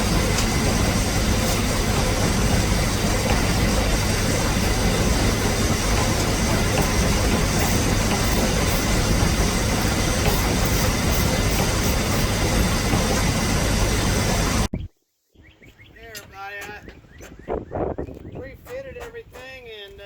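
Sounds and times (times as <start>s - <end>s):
engine running with hum: 0.0s - 14.7s.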